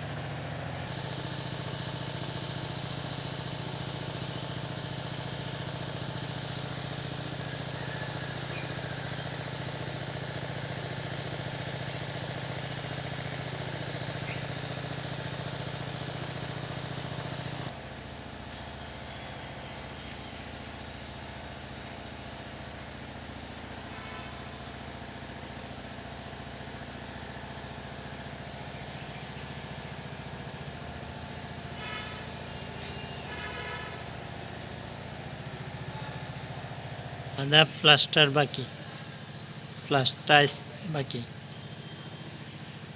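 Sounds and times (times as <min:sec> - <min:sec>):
engine hum: 0:00.0 - 0:17.7.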